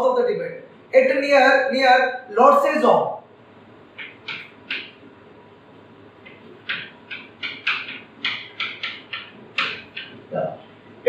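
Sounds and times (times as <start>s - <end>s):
scratchy writing on a board: 6.3s - 10.3s.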